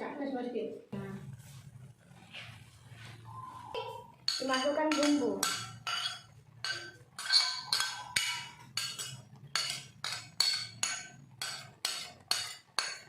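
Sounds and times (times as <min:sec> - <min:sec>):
metal utensil clinking against pan: 0:04.3 - 0:13.0.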